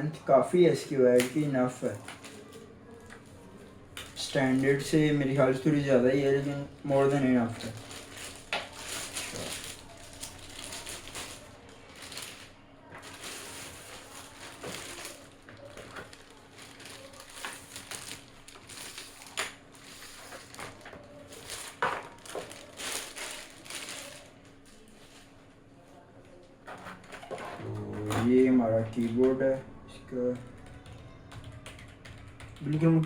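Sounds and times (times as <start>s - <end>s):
packaging rustling and crinkling: 1.1s - 3.4s, 4.0s - 25.4s.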